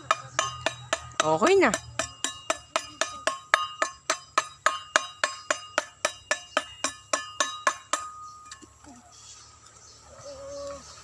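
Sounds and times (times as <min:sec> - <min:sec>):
hammer tapping metal tool: 0:00.0 - 0:08.7.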